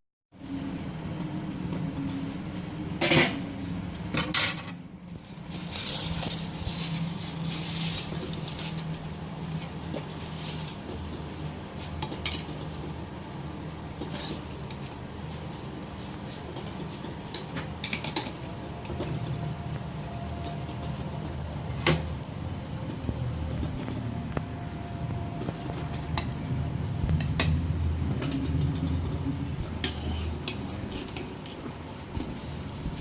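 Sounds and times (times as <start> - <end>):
steady low hum: 0.4 - 33.0.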